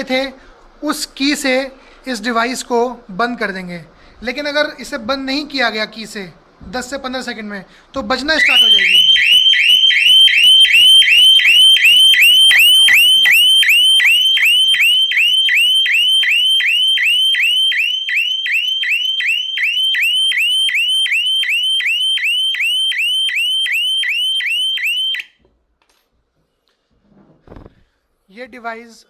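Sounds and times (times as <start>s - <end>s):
burglar alarm siren whooping: 8.4s - 25.4s.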